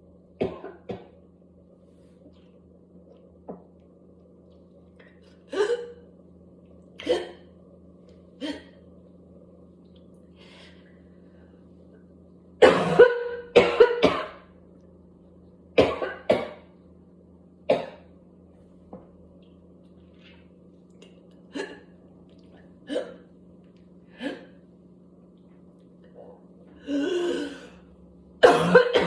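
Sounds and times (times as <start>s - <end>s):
person coughing harshly: 0.4s - 1.1s, 7.0s - 7.4s, 12.6s - 14.4s, 15.8s - 16.6s, 17.7s - 18.0s, 28.4s - 29.0s.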